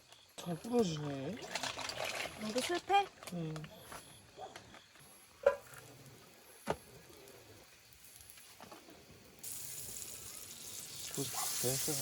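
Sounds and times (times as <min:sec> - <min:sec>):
food sizzling in a hot pan: 0:06.5 - 0:12.0.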